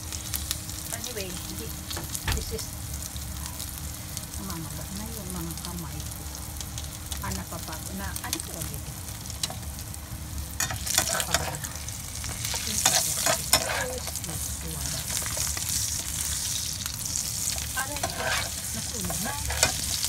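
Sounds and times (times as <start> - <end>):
omelette sizzling in a pan: 0.0 - 20.0
spatula scraping a pan: 10.6 - 16.7, 17.4 - 20.0.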